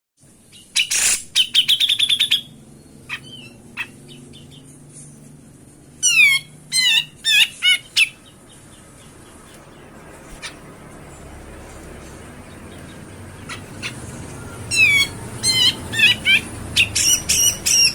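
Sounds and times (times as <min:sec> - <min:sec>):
downward-sweeping whistled bird calls: 0:00.5 - 0:04.7, 0:12.7 - 0:17.9
bird calling: 0:00.5 - 0:04.8, 0:06.0 - 0:10.8, 0:12.5 - 0:17.9.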